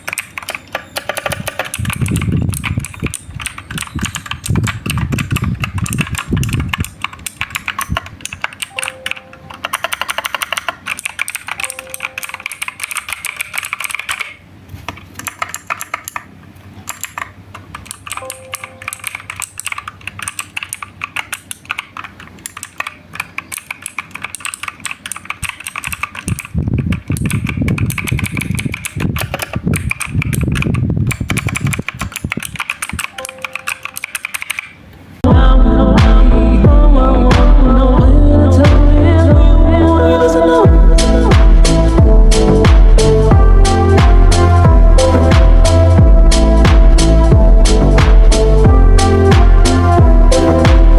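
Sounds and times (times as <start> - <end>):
sharp mechanical key clicks: 0.0 - 35.0
deeper thuds: 35.3 - 39.7, 40.7 - 50.9.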